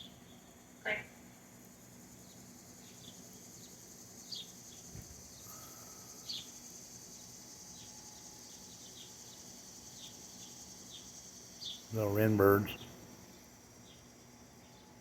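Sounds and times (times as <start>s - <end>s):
high-pitched insect hum: 0.0s - 15.0s
bird chirps: 2.8s - 6.8s.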